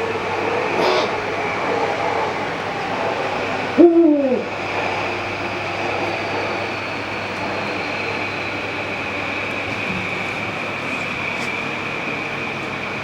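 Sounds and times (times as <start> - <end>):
steady background noise: 0.0 - 13.0
owl deep hoot: 0.5 - 2.4, 3.4 - 4.6.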